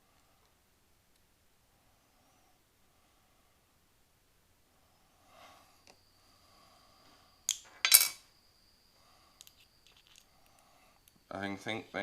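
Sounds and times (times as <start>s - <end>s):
metal parts clinking: 7.5s - 8.2s, 9.4s - 11.2s.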